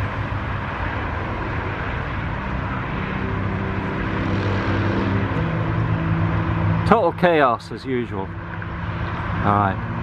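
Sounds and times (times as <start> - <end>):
heavy freeway traffic: 0.0 - 10.0
low engine hum: 0.0 - 10.0.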